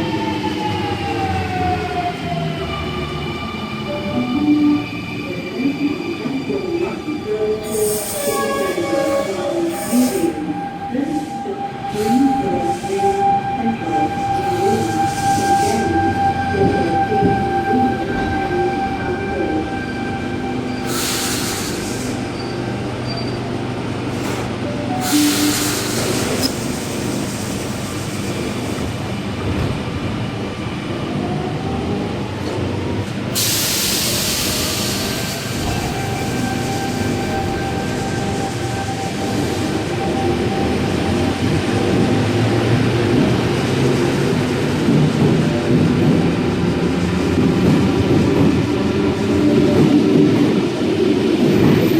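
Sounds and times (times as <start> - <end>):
loud hiss: 20.9 - 22.2.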